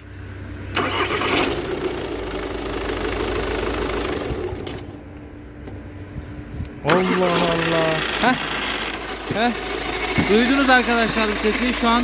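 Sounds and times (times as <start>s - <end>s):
harsh mechanical engine noise: 0.0s - 12.0s.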